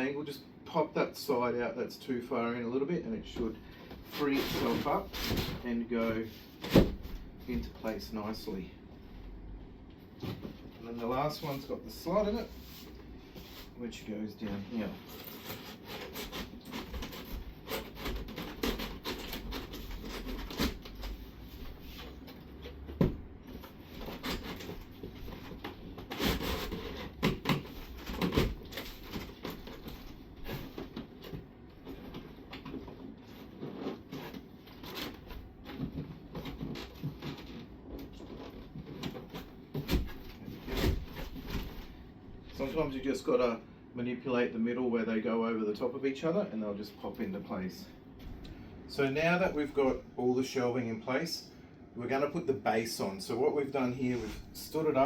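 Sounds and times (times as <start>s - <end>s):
cardboard scraping on cardboard: 3.6s - 8.6s, 10.2s - 13.8s, 14.4s - 42.8s.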